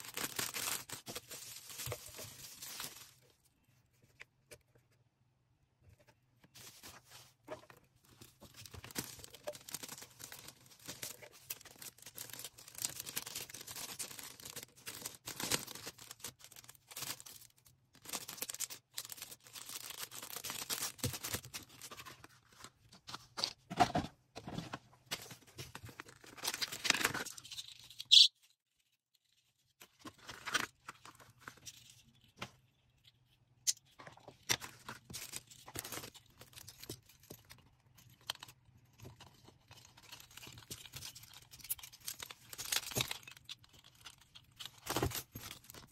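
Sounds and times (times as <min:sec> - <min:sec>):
packaging crinkling and tearing: 0:00.0 - 0:03.4, 0:08.3 - 0:22.7, 0:25.3 - 0:28.2, 0:34.6 - 0:45.9.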